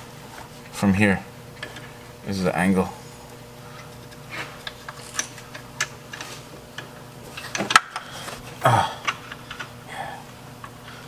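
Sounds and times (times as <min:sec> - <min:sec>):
metal hardware clicking and clinking: 0:04.6 - 0:08.0.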